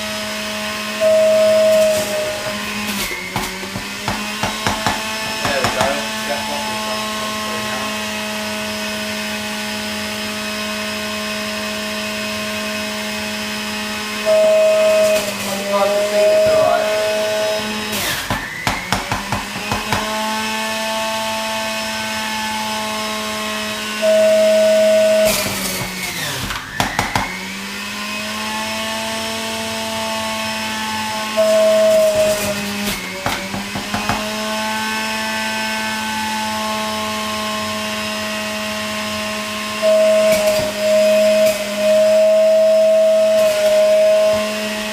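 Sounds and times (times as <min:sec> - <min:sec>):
juicer motor humming: 0:00.0 - 0:44.9
knocks: 0:03.3 - 0:06.2, 0:18.3 - 0:20.2, 0:33.2 - 0:34.3.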